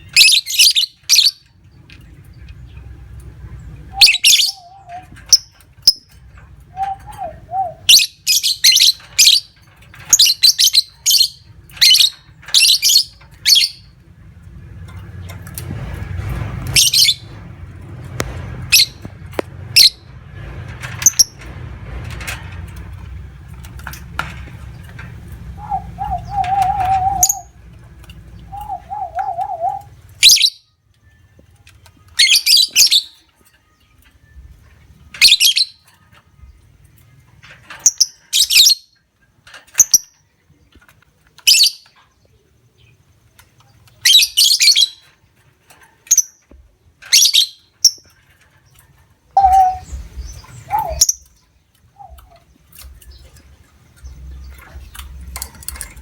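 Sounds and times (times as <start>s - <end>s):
lovebirds chattering calls: 3.9s - 6.1s, 24.7s - 27.5s, 28.4s - 30.6s, 49.4s - 51.4s.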